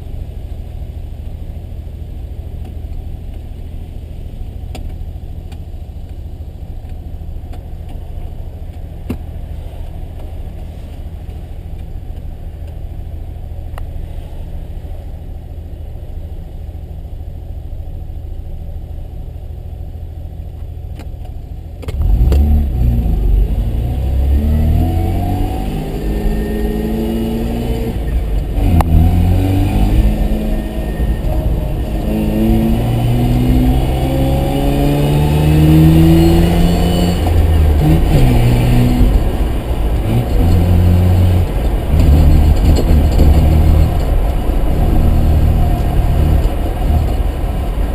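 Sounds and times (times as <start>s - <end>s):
rotary car engine revving: 21.8s - 47.9s.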